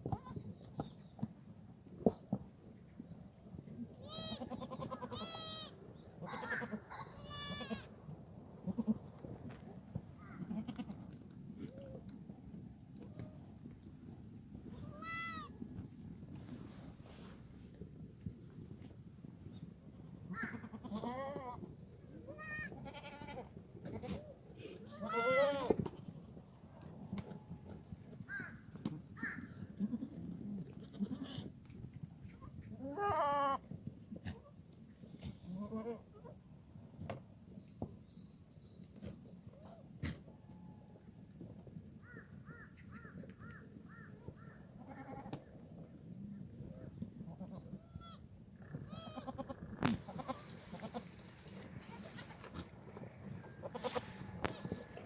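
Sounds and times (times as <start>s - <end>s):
goats bleating: 4.0s - 5.7s, 6.4s - 7.9s, 10.4s - 11.0s, 20.0s - 21.6s, 22.3s - 24.2s, 24.9s - 26.3s, 44.8s - 45.4s, 48.8s - 51.1s, 53.5s - 54.2s.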